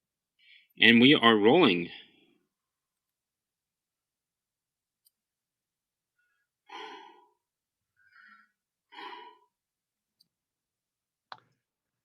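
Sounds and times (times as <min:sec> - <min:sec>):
breathy exhalations: 0:06.7 - 0:09.6.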